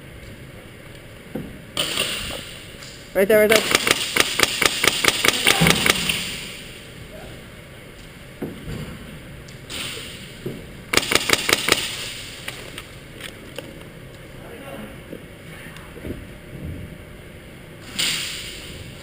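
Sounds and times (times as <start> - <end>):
airsoft rifle firing: 3.5 - 6.7, 10.9 - 12.5.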